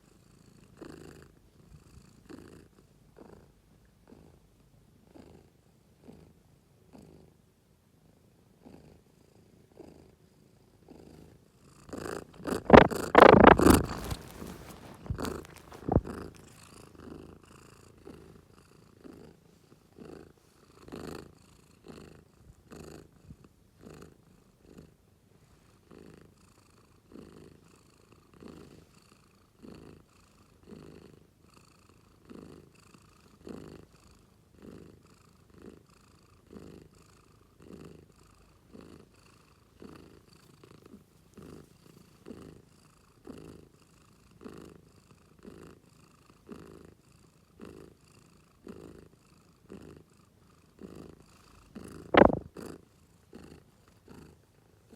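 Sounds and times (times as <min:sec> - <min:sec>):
cat purring: 0:00.0 - 0:07.4, 0:08.0 - 0:54.9.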